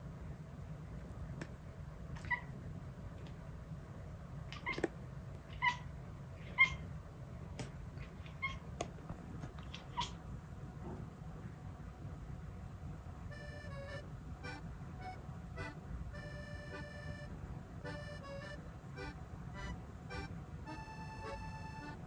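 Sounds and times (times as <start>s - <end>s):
kitten chattering: 2.2s - 2.6s, 4.5s - 7.0s, 7.9s - 8.8s, 9.6s - 10.2s.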